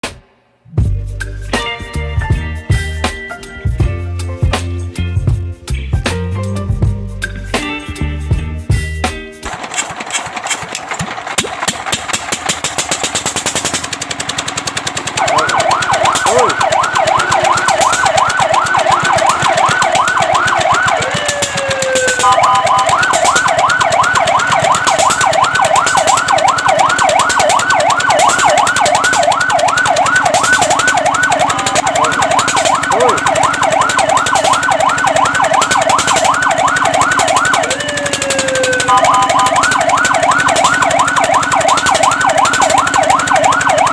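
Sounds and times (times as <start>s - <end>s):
engine running: 9.4s - 43.9s
electronic siren yelping: 15.0s - 43.9s.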